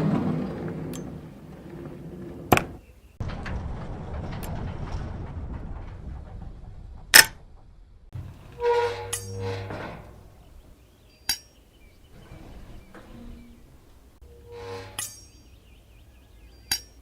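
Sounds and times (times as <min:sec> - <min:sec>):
metallic clatter with ringing: 0:03.3 - 0:10.5, 0:12.2 - 0:15.6.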